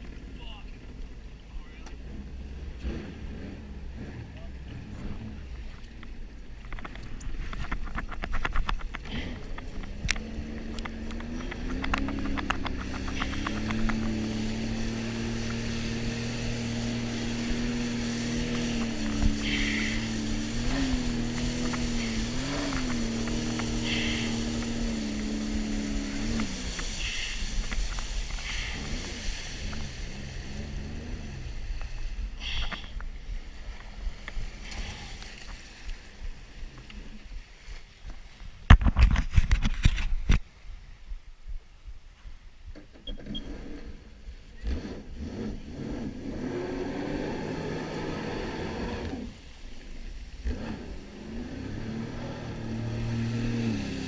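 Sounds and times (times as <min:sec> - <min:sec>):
jet ski engine: 0:00.0 - 0:37.8, 0:42.7 - 0:54.0
loud rough burst of noise: 0:12.9 - 0:29.6.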